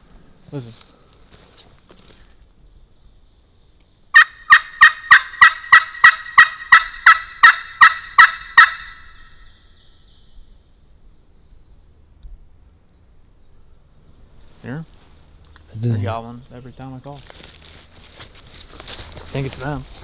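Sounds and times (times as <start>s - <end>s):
turkey call hen yelps: 4.2s - 9.3s.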